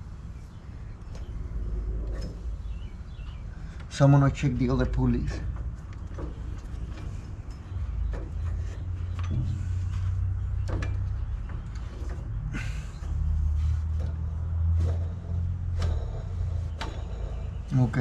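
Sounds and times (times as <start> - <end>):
engine pulleys whirring: 0.0 - 18.0
handling clicks and knocks: 3.2 - 12.5.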